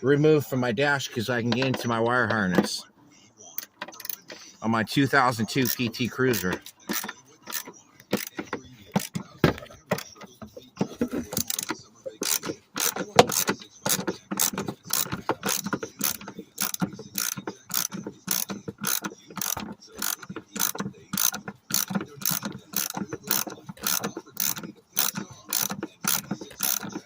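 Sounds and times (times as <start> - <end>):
socket ratchet clicking: 3.6 - 4.3, 5.6 - 9.2, 11.4 - 27.0.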